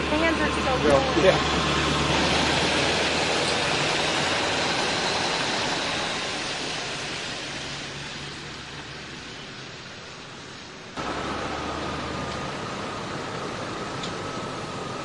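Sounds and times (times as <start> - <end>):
vehicle engine running: 0.0 - 9.0, 11.0 - 15.0
loud rushing noise: 0.0 - 9.2.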